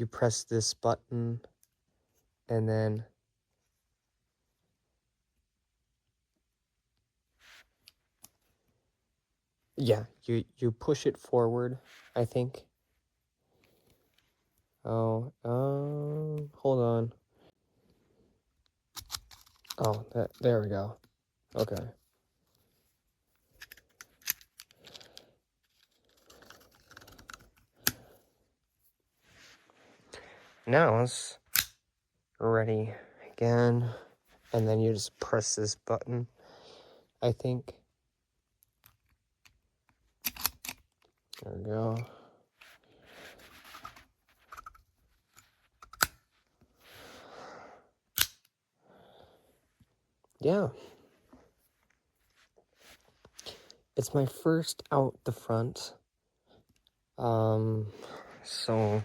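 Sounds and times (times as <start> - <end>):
rustling of knife handling: 21.5 - 28.2, 40.2 - 47.1.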